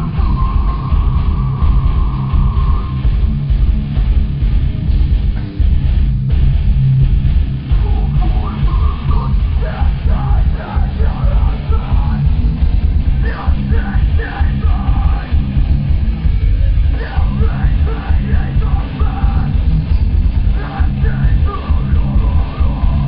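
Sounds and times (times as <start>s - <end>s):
heavy metal band playing: 0.0s - 23.0s
shouted vocals: 7.9s - 12.3s, 13.2s - 15.4s, 16.9s - 19.6s, 20.5s - 23.0s.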